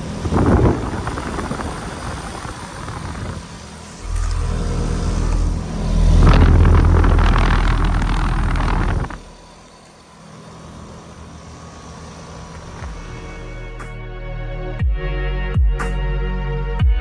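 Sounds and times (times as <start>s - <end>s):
loud rushing noise: 0.0s - 13.9s
heat pump low hum: 0.0s - 15.8s.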